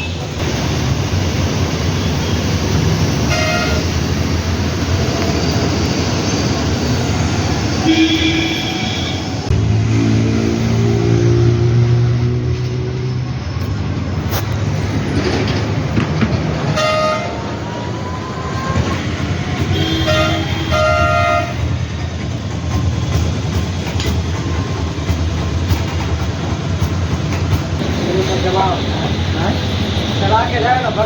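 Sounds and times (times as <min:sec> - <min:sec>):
road traffic passing: 0:00.0 - 0:31.0
vehicle horns honking: 0:03.2 - 0:04.0, 0:07.8 - 0:09.5, 0:16.8 - 0:17.5, 0:19.6 - 0:21.8.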